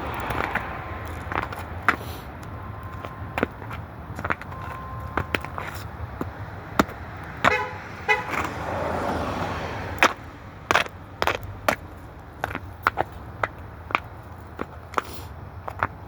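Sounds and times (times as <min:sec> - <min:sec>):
passing vehicle: 0:00.0 - 0:16.0
car horn toots: 0:02.5 - 0:05.9, 0:07.4 - 0:08.5.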